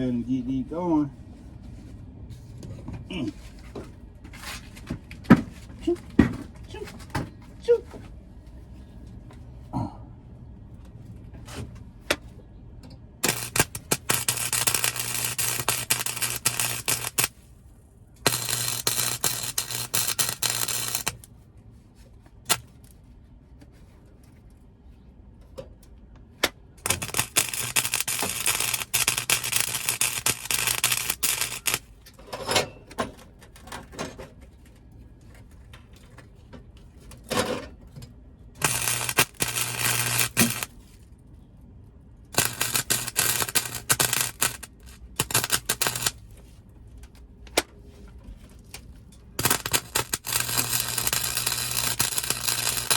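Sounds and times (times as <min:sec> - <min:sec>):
welder hum: 0:13.2 - 0:17.4, 0:18.2 - 0:21.3, 0:26.8 - 0:31.9, 0:38.6 - 0:40.8, 0:42.3 - 0:46.2, 0:49.4 - 0:52.9
welding arc crackling: 0:13.2 - 0:17.4, 0:18.2 - 0:21.3, 0:26.8 - 0:31.9, 0:38.6 - 0:40.8, 0:42.3 - 0:46.2, 0:49.4 - 0:52.9.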